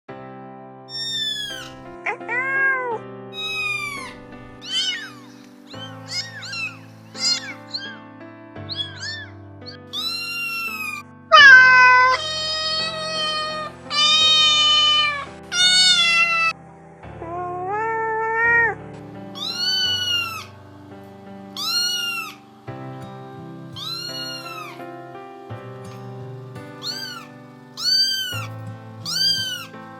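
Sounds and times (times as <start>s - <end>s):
background music: 0.2s - 29.9s
cat meowing: 0.9s - 8.0s, 8.7s - 16.6s, 17.2s - 20.6s, 21.6s - 22.4s, 23.8s - 24.9s, 26.7s - 29.8s.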